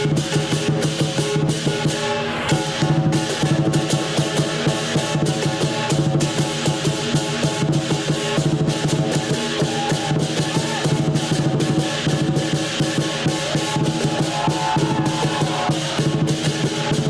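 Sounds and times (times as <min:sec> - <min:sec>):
gongs ringing: 0:00.0 - 0:10.5
big drum beating: 0:00.0 - 0:17.0
cymbals crashing: 0:00.0 - 0:17.0.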